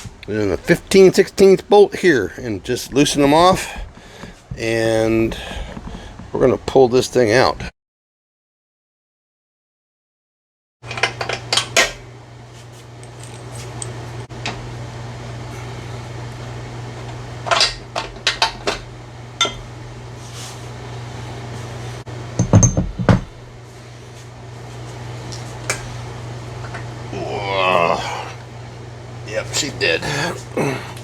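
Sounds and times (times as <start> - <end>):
steady low hum: 0.0 - 7.7, 10.9 - 31.0
metal tools clanking: 13.0 - 14.6, 22.4 - 23.2.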